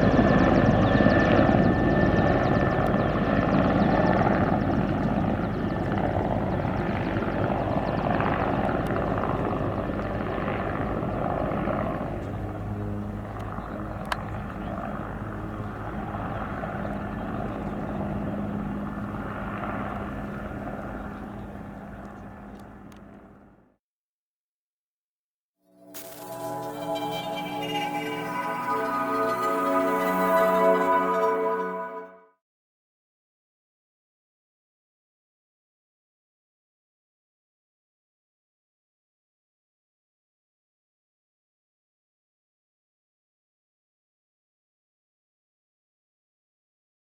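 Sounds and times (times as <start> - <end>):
helicopter passing by: 0.0 - 23.8, 25.9 - 32.1.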